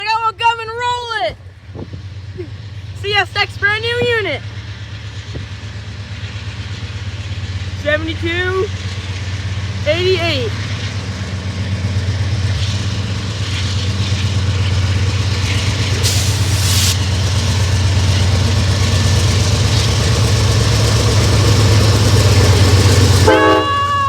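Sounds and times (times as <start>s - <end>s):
diesel locomotive engine rumbling: 0.0s - 24.0s
air hiss: 16.0s - 17.1s.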